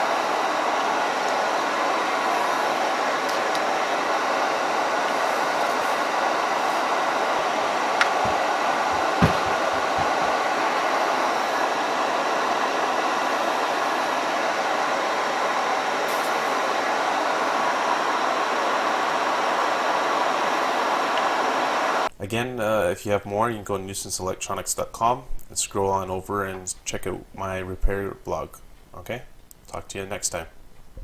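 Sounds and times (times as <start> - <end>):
steady rushing noise: 0.0 - 22.1
soft knocks: 8.0 - 10.4.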